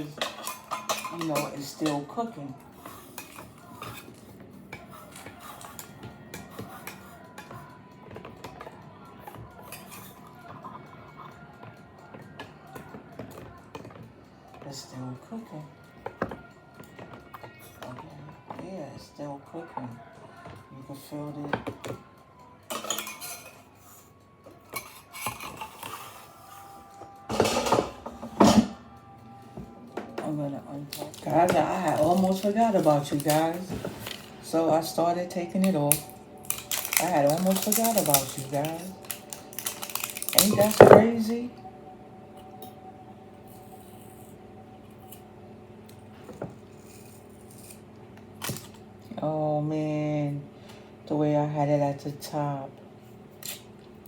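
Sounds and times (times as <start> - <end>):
shrink wrap rustling: 30.5 - 41.4.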